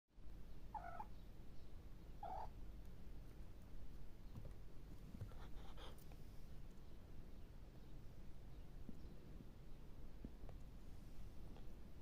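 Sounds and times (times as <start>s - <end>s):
cat chirp-like call: 0.7s - 1.1s, 2.2s - 2.5s
cat sniffing hard: 5.2s - 6.3s.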